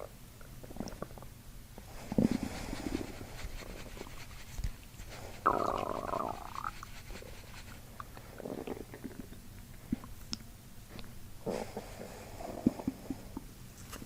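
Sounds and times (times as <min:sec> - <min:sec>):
stomach gurgling: 0:00.0 - 0:01.4, 0:05.4 - 0:10.3, 0:11.4 - 0:13.5.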